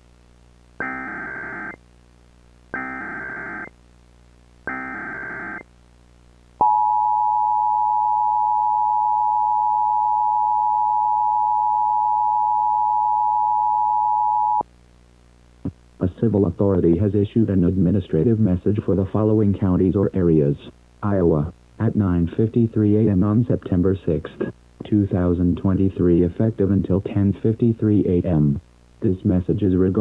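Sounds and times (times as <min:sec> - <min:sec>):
buzzing data tones: 0:00.8 - 0:01.8, 0:02.7 - 0:03.8, 0:04.7 - 0:05.7.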